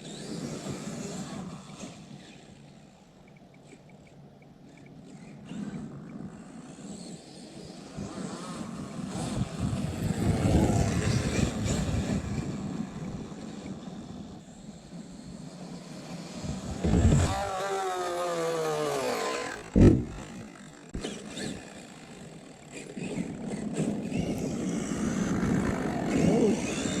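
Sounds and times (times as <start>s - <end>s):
rc truck motor whine: 0.0s - 27.0s
tyres on dirt: 8.0s - 27.0s
loud thump: 19.7s - 20.4s.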